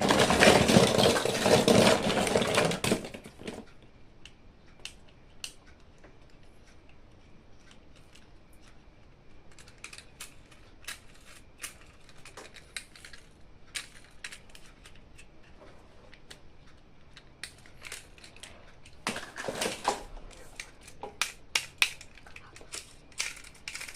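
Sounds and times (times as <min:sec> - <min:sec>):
packaging crinkling: 0:00.0 - 0:03.2
plastic toys clicking and tapping: 0:00.0 - 0:07.0, 0:09.4 - 0:23.9.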